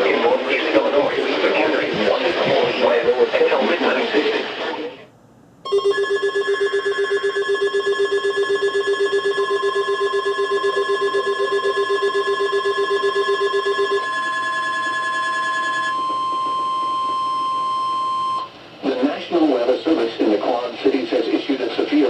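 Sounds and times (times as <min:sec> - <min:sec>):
other steady tones: 0:00.0 - 0:21.1
rapidly pulsing low beep: 0:05.7 - 0:18.6
steady warning alarm tone: 0:05.7 - 0:18.6.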